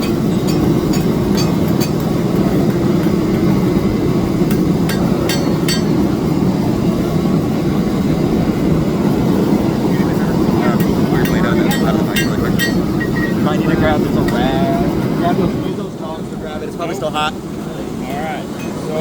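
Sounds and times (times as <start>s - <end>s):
sharp metallic clinks: 0.0s - 3.4s, 4.5s - 6.1s, 10.7s - 13.4s.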